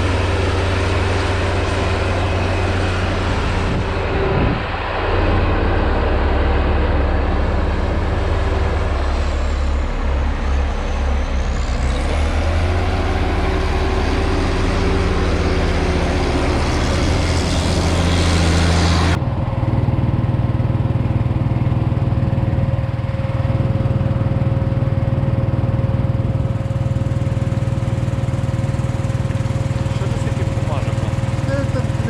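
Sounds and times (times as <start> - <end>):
thin steady whine: 0.0 - 11.8
loud rushing noise: 0.0 - 19.8
tractor engine droning: 0.0 - 32.0.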